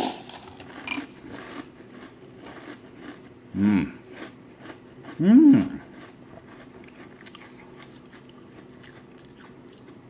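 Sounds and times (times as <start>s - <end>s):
person chewing cereal: 0.0s - 10.0s.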